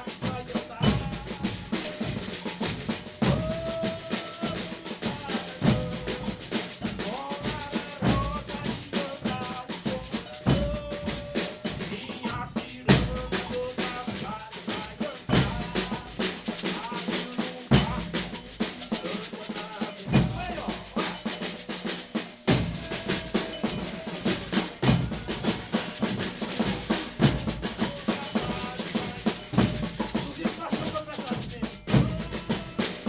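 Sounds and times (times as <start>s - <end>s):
heavy bass drum accents: 0.0s - 33.0s
percussion ensemble drumming: 0.0s - 33.0s.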